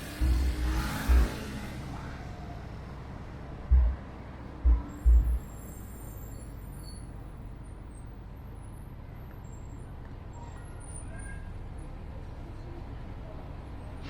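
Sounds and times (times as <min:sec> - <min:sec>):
tram rumbling along tracks: 0:00.0 - 0:07.6.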